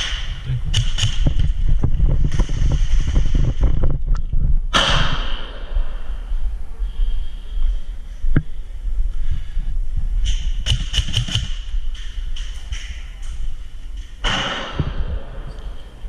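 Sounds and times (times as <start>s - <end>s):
sharp clicks and knocks: 0.0s - 1.7s, 10.2s - 15.8s
low rumble: 0.0s - 16.0s.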